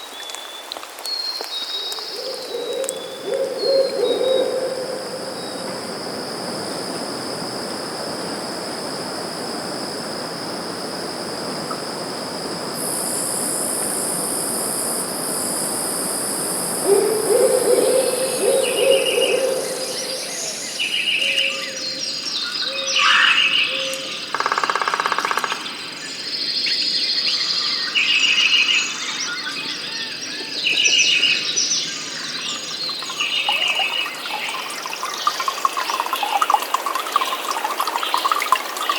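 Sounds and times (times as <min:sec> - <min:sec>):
high insect drone: 0:01.0 - 0:38.9
low hooting call: 0:02.1 - 0:21.8
steady rushing hiss: 0:02.8 - 0:21.2
bird notes: 0:16.7 - 0:21.8.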